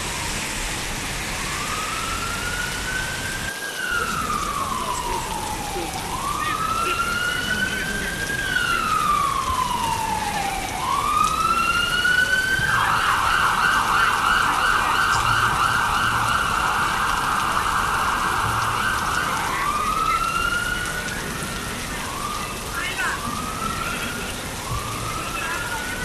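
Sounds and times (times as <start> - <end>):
emergency vehicle siren: 0.0 - 26.0
rain on the street: 0.0 - 26.0.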